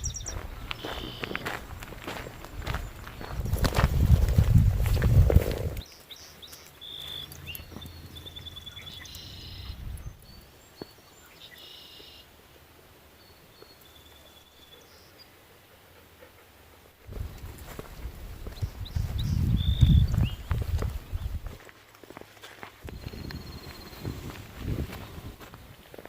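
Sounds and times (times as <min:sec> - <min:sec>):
songbirds calling: 0:00.0 - 0:12.4, 0:13.0 - 0:26.0
footsteps: 0:00.2 - 0:08.4, 0:17.1 - 0:26.0.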